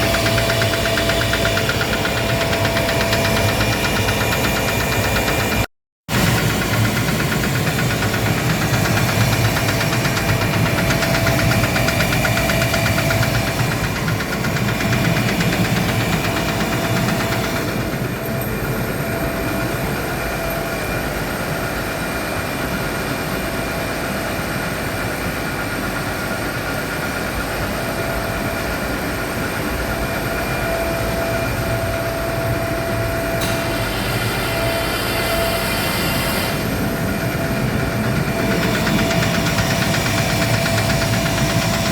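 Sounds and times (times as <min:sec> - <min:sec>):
air compressor knocking: 0:00.0 - 0:21.0, 0:33.2 - 0:41.9.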